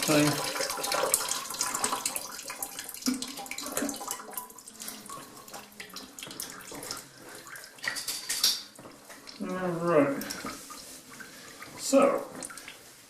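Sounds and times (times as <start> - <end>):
water splashing into a pot: 0.0 - 12.9.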